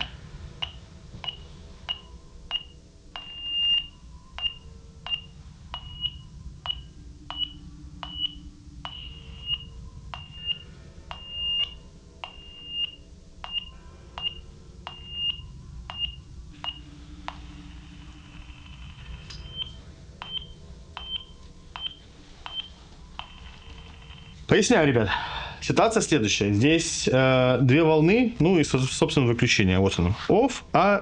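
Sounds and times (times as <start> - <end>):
baby monitor high beeps: 0.0 - 16.8.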